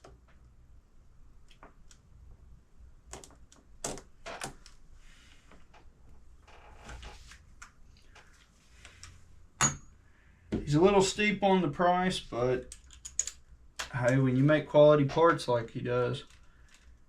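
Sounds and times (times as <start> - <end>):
small parts clicking and tapping: 12.6 - 14.2, 16.2 - 17.0.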